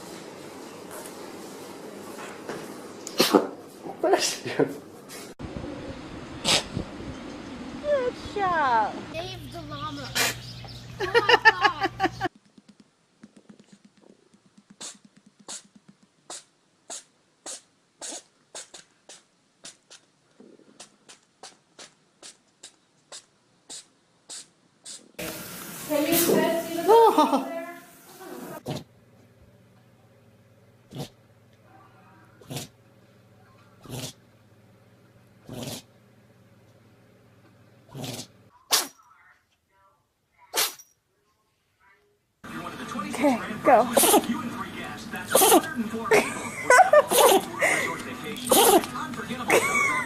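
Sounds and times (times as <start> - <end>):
animal sneezing: 3.1 - 3.5, 6.4 - 6.8, 10.1 - 10.5, 14.7 - 20.1, 20.7 - 25.2, 28.1 - 28.9, 30.9 - 31.2, 32.4 - 32.8, 37.9 - 39.0, 40.5 - 40.9, 43.9 - 44.4, 45.3 - 45.7, 46.9 - 47.7, 48.5 - 49.0.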